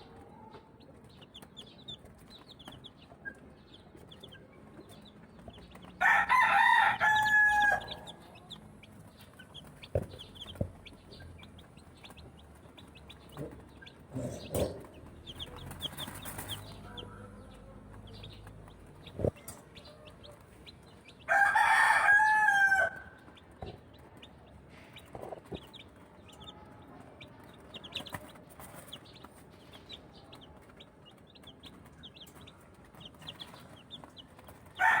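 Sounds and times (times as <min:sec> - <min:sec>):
chicks peeping: 0:00.0 - 0:35.0
rooster crowing: 0:06.0 - 0:08.2, 0:21.3 - 0:23.2, 0:34.8 - 0:35.0
knocks: 0:09.9 - 0:10.9.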